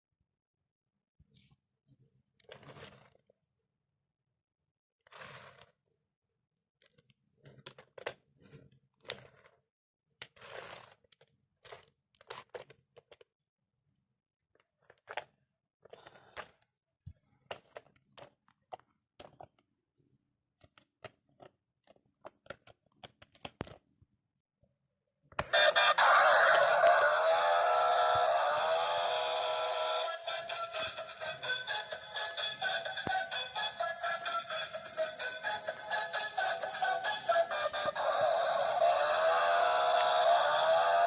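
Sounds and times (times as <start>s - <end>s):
toy car rustling: 10.2s - 13.3s, 25.4s - 41.0s.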